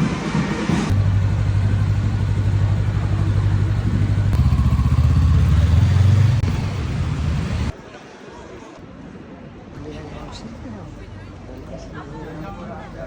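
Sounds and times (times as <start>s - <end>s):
vehicle engine running: 0.9s - 7.7s.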